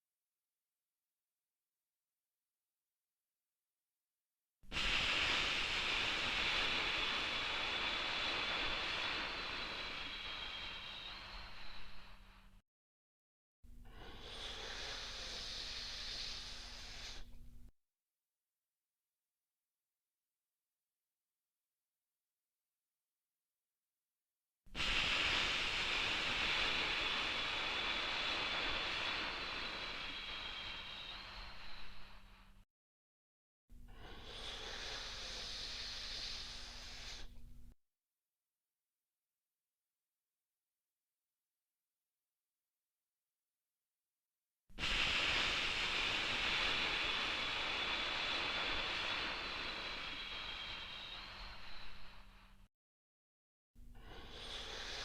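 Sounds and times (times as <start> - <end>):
long airy exhale: 4.7 - 12.6, 13.7 - 17.7, 24.7 - 32.6, 33.8 - 37.8, 44.7 - 52.7, 53.8 - 55.0.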